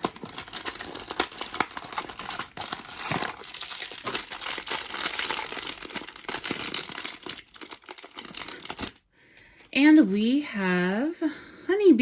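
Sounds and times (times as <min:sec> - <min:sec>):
plastic wrapper crinkling and tearing: 0:00.0 - 0:09.0.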